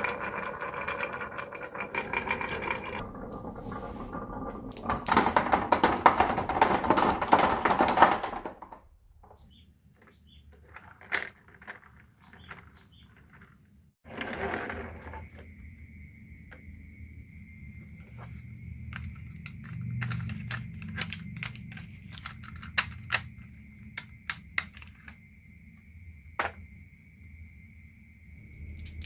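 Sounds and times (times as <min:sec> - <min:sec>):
marbles clattering down wooden run: 0:00.0 - 0:08.8.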